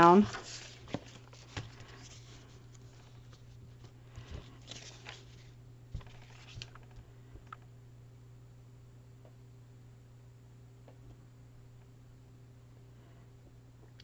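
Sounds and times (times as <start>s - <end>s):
steady low hum: 0.0s - 14.0s
paper rustling: 0.2s - 7.0s.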